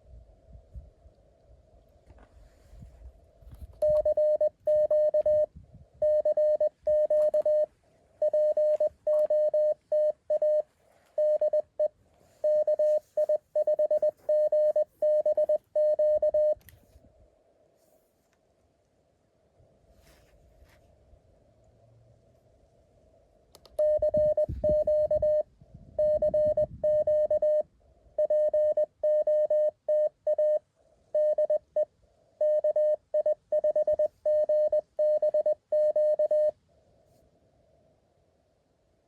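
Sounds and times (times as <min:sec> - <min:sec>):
morse code tone: 0:03.8 - 0:16.6, 0:23.8 - 0:30.6, 0:31.2 - 0:36.5.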